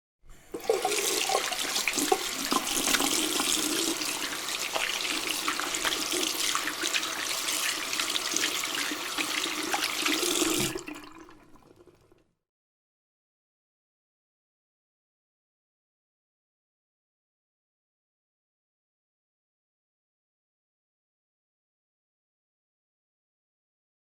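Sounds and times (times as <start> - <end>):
tap water running into sink: 0.3 - 12.2.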